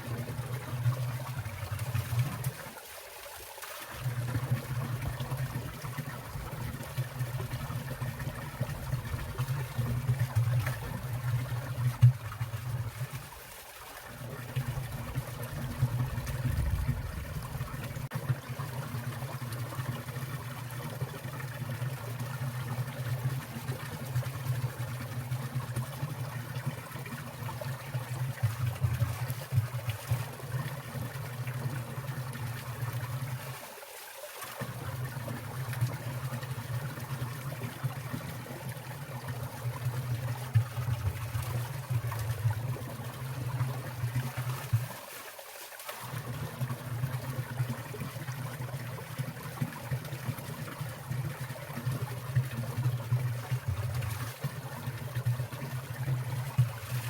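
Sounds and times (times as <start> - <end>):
stream water trickling: 0.0 - 57.0
low rumble: 16.3 - 17.8.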